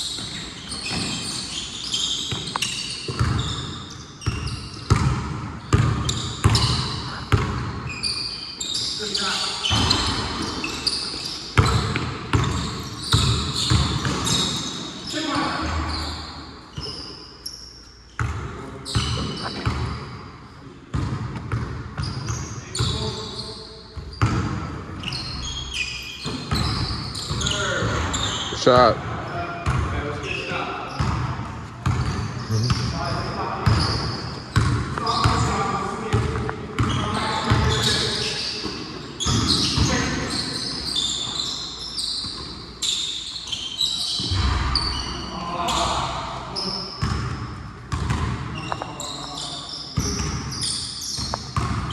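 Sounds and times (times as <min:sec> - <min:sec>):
basketball bouncing on court: 0:00.0 - 0:08.0, 0:09.6 - 0:11.0, 0:11.6 - 0:14.8, 0:18.2 - 0:20.2, 0:20.9 - 0:23.2, 0:24.0 - 0:25.6, 0:26.2 - 0:28.4, 0:29.0 - 0:30.0, 0:30.9 - 0:40.3, 0:47.0 - 0:49.0, 0:50.0 - 0:51.9
sneakers squeaking on floor: 0:00.0 - 0:51.9
players' voices: 0:31.9 - 0:34.1, 0:43.9 - 0:47.1.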